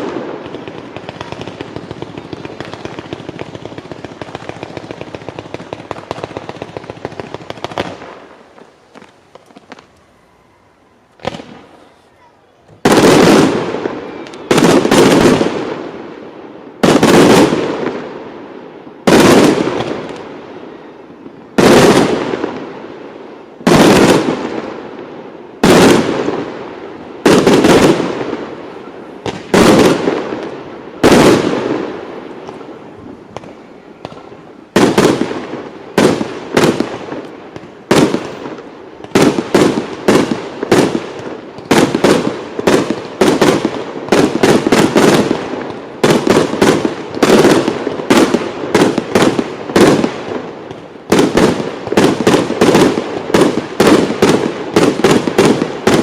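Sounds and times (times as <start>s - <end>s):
firework shells bursting: 0.0s - 15.4s.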